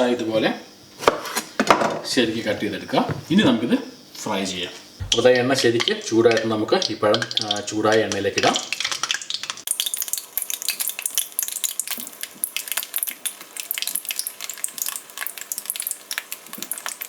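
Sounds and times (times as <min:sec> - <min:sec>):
bananas sizzling in hot oil: 0:04.0 - 0:17.0.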